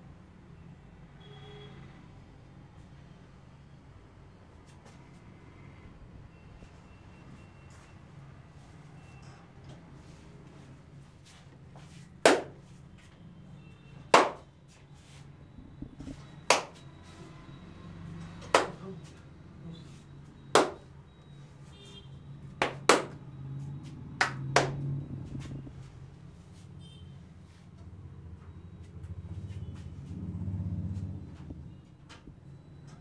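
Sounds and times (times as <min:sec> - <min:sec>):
hand claps and slaps on head: 0:12.2 - 0:12.7, 0:14.1 - 0:14.5, 0:16.5 - 0:16.8, 0:18.5 - 0:18.8, 0:20.6 - 0:20.9, 0:22.6 - 0:23.2, 0:24.2 - 0:24.8.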